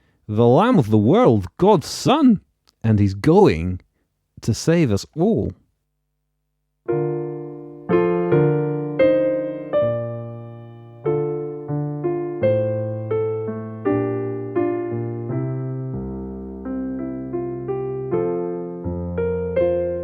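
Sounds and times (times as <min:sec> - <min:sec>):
electric piano chords: 0:06.9 - 0:20.0.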